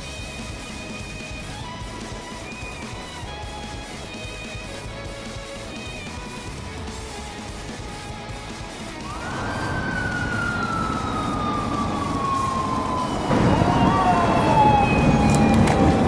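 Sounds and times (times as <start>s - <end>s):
traffic and engine noise: 0.0s - 16.0s
police motorcycle siren wailing: 8.8s - 16.0s
wavering siren tone: 9.0s - 16.0s.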